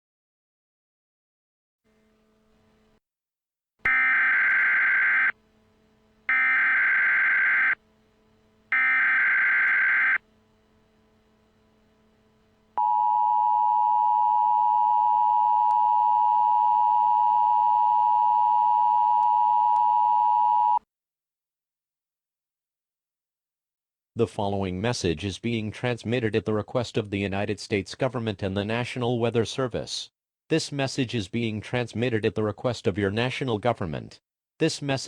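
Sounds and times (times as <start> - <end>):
screechy digital data tones: 3.9 - 5.3, 6.3 - 7.8, 8.8 - 10.2
two-tone attention signal: 3.9 - 5.4, 6.3 - 7.8, 8.8 - 10.2.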